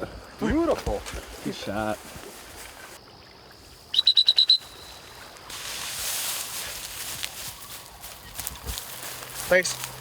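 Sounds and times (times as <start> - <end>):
hissing rustling noise: 5.4 - 10.0.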